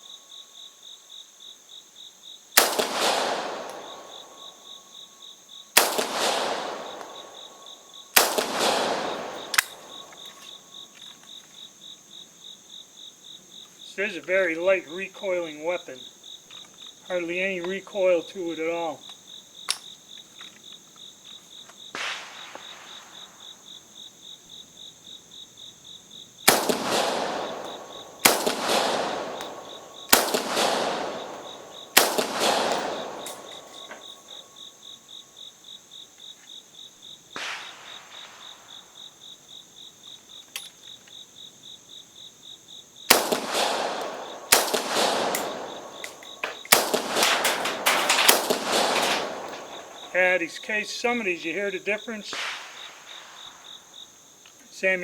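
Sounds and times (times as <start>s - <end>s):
crickets chirping: 0.0s - 55.0s
rifle shots: 2.6s - 4.7s, 5.8s - 11.2s, 21.9s - 23.6s, 26.4s - 34.5s, 37.3s - 39.0s, 43.1s - 51.6s, 52.3s - 53.8s.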